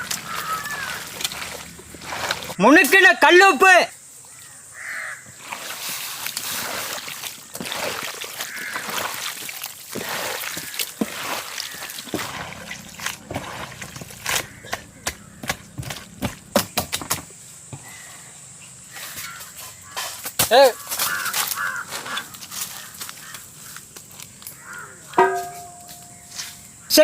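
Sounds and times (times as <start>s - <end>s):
hands squelching wet food: 0.0s - 2.6s, 5.3s - 16.1s.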